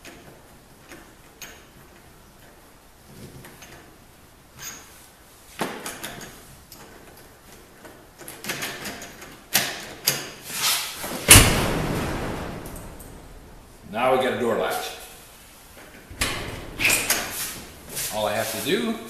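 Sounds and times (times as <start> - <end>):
loud thump with ringing: 11.2 - 13.4
door latch clicks and knocks: 16.1 - 17.3.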